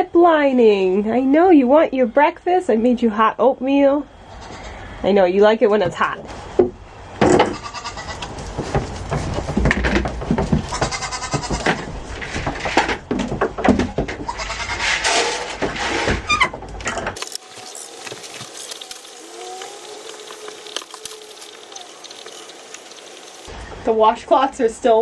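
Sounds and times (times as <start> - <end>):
goat bleating: 4.3 - 4.8, 7.5 - 8.4, 10.7 - 11.8, 14.3 - 14.8
rustling handling noise: 8.1 - 14.2, 14.8 - 23.5.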